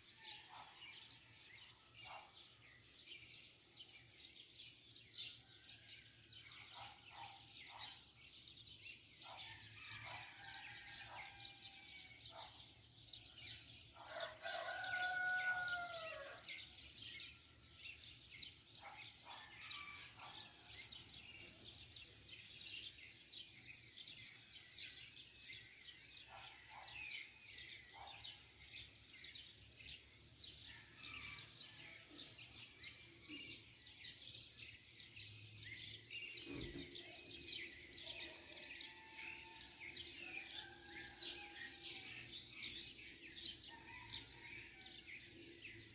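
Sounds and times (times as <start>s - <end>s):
rooster crowing: 14.2s - 16.4s, 38.2s - 42.0s
small birds chirping: 26.2s - 45.9s.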